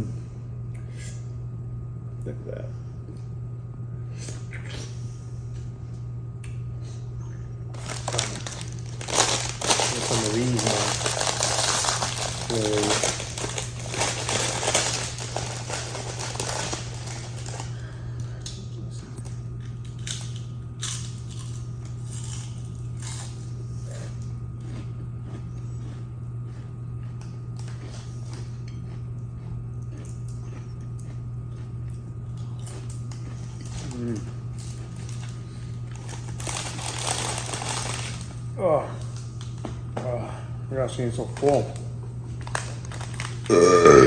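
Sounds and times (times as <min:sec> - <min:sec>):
steady low hum: 0:00.0 - 0:44.0
food packaging rustling and crinkling: 0:07.7 - 0:18.3, 0:32.8 - 0:39.8, 0:41.2 - 0:43.6.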